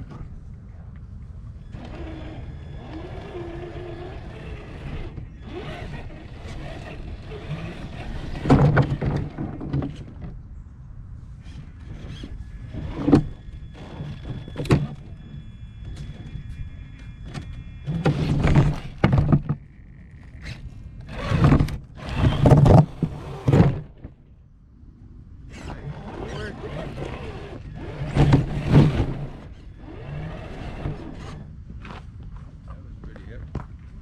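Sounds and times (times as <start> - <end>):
radio-controlled car motor whining: 1.6 - 10.0, 11.5 - 24.0, 25.5 - 31.5
wheels scraping and knocking on rock: 1.7 - 10.4, 11.5 - 24.2, 25.6 - 33.8.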